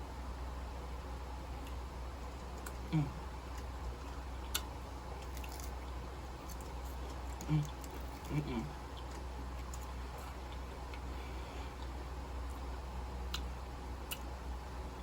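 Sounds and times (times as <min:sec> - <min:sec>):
person humming mm: 0:02.8 - 0:03.2, 0:07.4 - 0:08.8
wet chewing: 0:03.5 - 0:12.7
lip smacks: 0:14.1 - 0:14.3.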